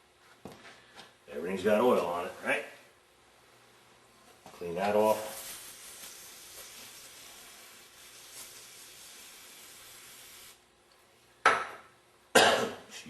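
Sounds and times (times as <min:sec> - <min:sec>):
pressurised spray hissing: 0:04.9 - 0:10.6.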